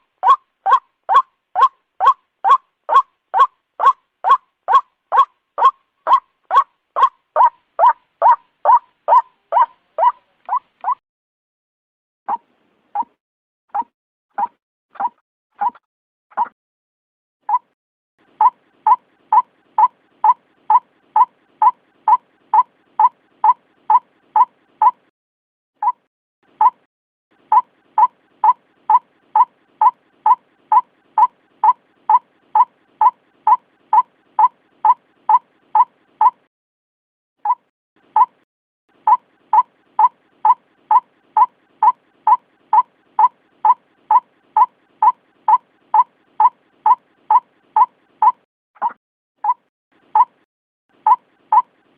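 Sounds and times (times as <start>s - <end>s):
waterhen calling: 0.2s - 10.6s.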